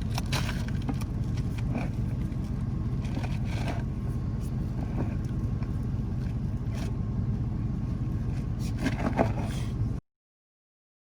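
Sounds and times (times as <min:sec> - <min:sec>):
low rumble: 0:00.0 - 0:10.0
scrapes and knocks: 0:00.2 - 0:04.0, 0:08.3 - 0:09.6.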